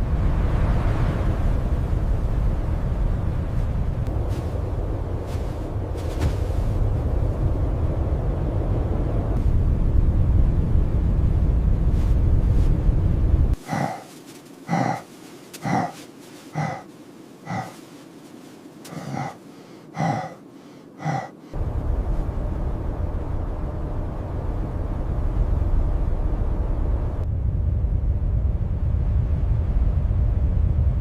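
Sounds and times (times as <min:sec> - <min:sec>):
blizzard wind rumble: 0:00.0 - 0:31.0
person gasping for breath: 0:13.6 - 0:18.0, 0:18.8 - 0:21.6.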